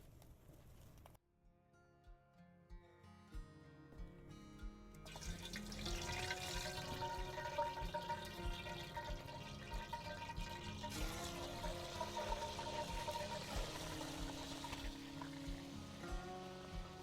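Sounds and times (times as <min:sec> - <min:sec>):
soft background music: 0:03.4 - 0:17.0
water running and splashing: 0:05.1 - 0:17.0.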